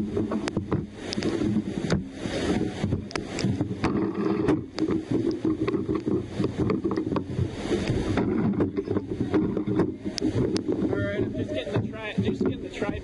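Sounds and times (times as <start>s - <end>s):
waterfall rushing: 0.0s - 13.0s
wind buffeting microphone: 0.0s - 13.0s.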